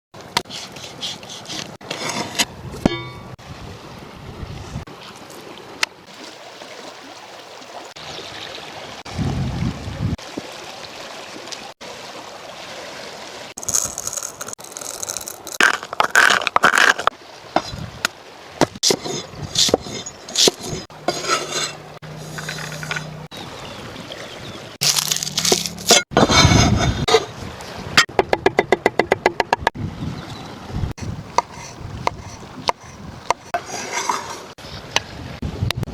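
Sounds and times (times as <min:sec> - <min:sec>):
running stream: 0:00.2 - 0:35.9.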